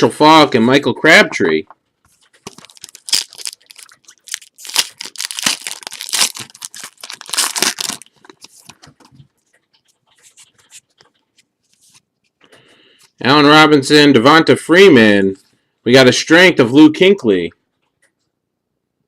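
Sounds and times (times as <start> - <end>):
wrapper tearing and crinkling: 2.2 - 8.8.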